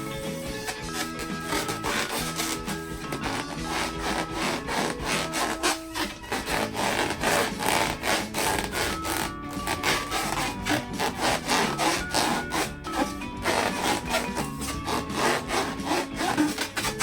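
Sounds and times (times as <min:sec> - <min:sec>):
hands rubbing rubber balloons: 0:00.0 - 0:17.0.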